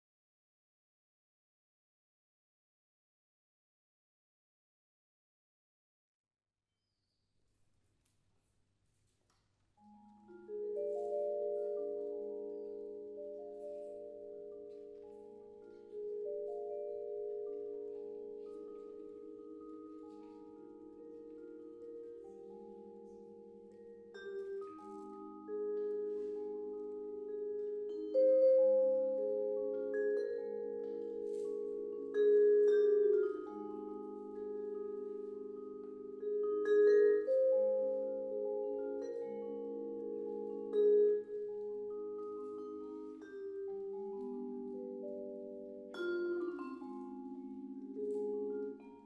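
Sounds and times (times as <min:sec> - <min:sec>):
vibraphone playing slow chords: 0:09.8 - 0:49.0.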